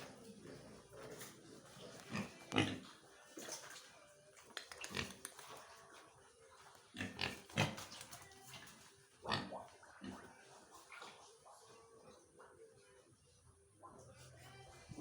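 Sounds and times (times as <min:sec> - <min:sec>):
pigs grunting: 0:00.0 - 0:03.0, 0:06.9 - 0:08.0, 0:09.2 - 0:10.6.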